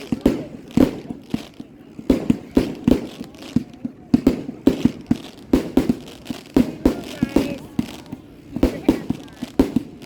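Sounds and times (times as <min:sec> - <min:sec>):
fireworks bangs: 0:00.0 - 0:10.0.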